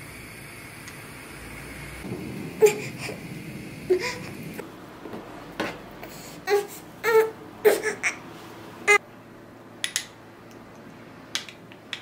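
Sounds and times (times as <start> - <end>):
baby whimpering cries: 6.5 - 8.2.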